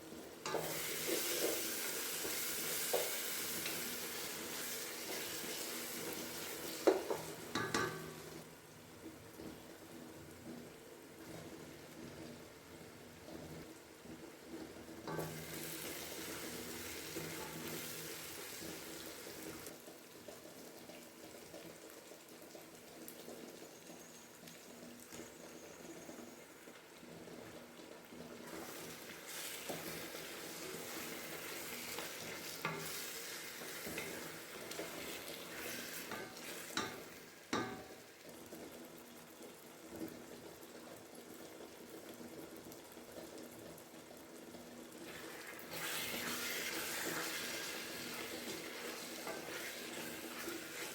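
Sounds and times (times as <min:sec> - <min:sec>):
food sizzling in a pan: 0:00.0 - 0:50.9
utensil knocking against pan: 0:36.1 - 0:38.0.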